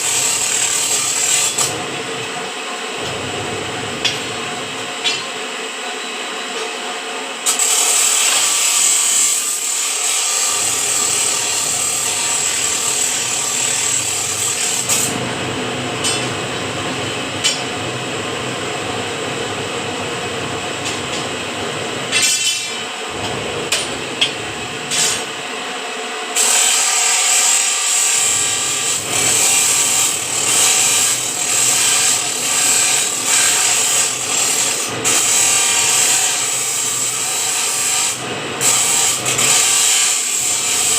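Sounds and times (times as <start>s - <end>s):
band saw cutting steel bar: 0.0s - 2.4s, 4.0s - 5.4s, 7.4s - 15.3s, 16.0s - 16.5s, 17.4s - 17.7s, 22.0s - 25.5s, 26.3s - 40.9s.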